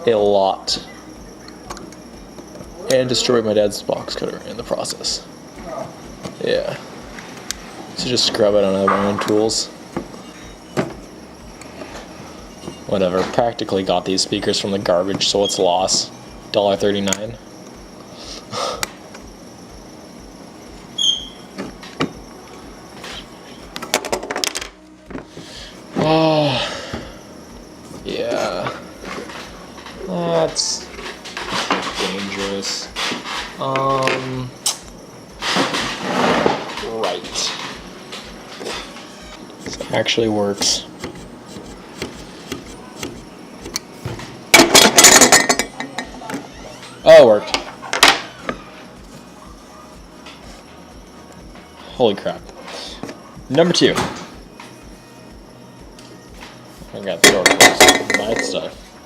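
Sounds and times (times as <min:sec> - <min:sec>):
tool squeak: 0:10.1 - 0:11.0, 0:15.2 - 0:16.1, 0:20.9 - 0:21.6, 0:38.5 - 0:43.1, 0:45.1 - 0:47.7.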